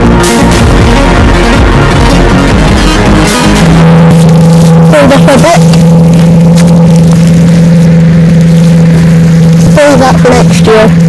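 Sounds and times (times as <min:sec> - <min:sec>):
music: 0:00.0 - 0:11.0
tractor engine droning: 0:00.0 - 0:11.0.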